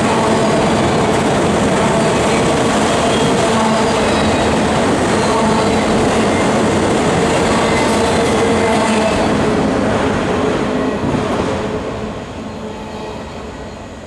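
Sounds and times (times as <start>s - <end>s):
freight train rolling past: 0.0s - 14.0s.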